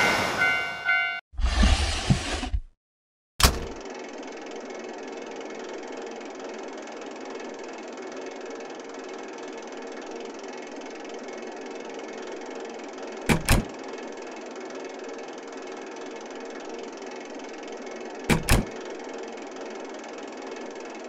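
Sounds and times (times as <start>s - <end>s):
machine running with faint hum: 3.4s - 21.0s.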